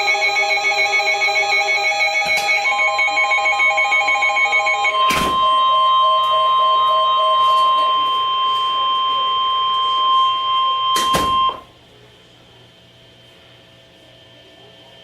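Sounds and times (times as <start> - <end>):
steady high alarm beep: 0.0 - 11.7.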